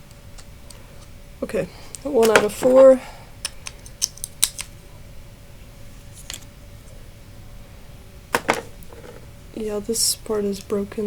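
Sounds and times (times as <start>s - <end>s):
faint steady hum: 0.0s - 11.0s
clicks of parts being handled: 1.9s - 4.7s.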